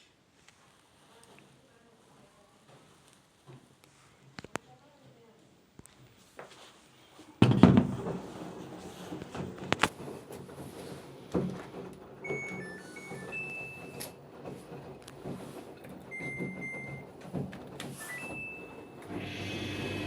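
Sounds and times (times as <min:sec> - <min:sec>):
dryer control panel beeps: 0:12.2 - 0:14.2, 0:16.0 - 0:17.2, 0:17.9 - 0:20.0.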